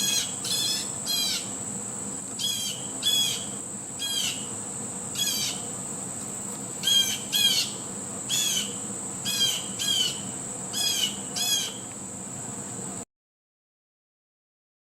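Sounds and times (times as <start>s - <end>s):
blue jay calling: 0.0s - 1.6s, 2.4s - 4.5s, 5.1s - 5.8s, 6.8s - 11.9s.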